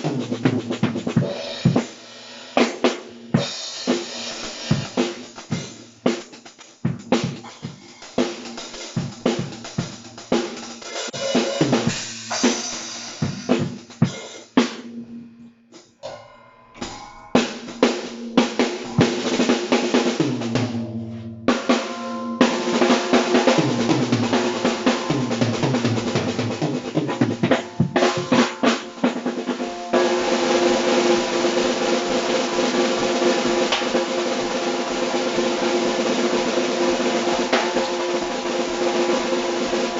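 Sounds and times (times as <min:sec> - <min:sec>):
drum kit playing: 0:00.0 - 0:39.9
cymbals ringing: 0:15.0 - 0:39.9.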